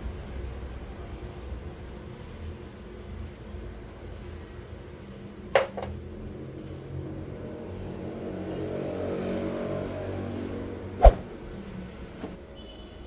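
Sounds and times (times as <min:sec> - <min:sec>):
soft rushing noise: 0:10.9 - 0:12.4.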